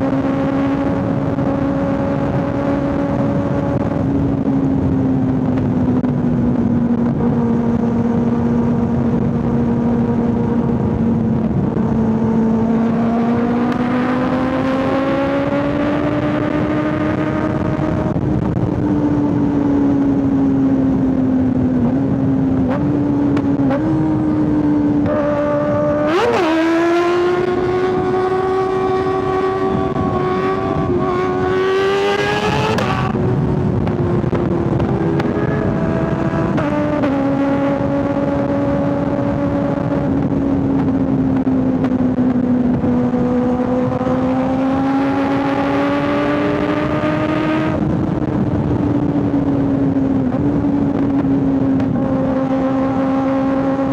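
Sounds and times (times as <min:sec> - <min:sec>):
motorcycle engine revving: 0:00.0 - 0:53.9
riding wind noise: 0:00.0 - 0:53.9.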